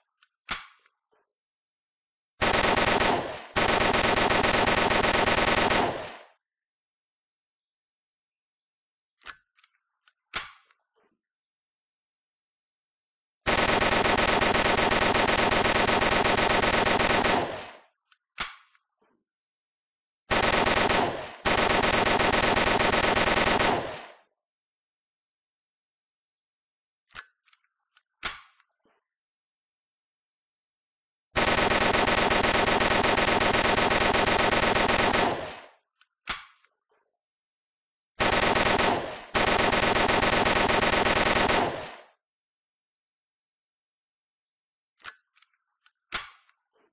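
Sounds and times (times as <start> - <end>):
submachine gun automatic fire: 2.4 - 6.4, 13.5 - 17.9, 20.3 - 24.3, 31.4 - 35.8, 38.2 - 42.2.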